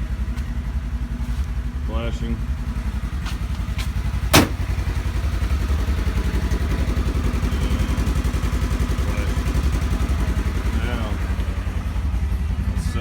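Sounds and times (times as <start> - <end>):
vehicle engine idling: 0.0 - 13.0.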